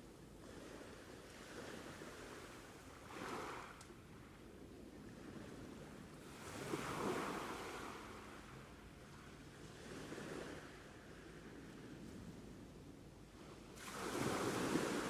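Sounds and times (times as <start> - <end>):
sea waves breaking on beach: 0.5 - 3.8, 6.2 - 8.7, 13.8 - 15.0.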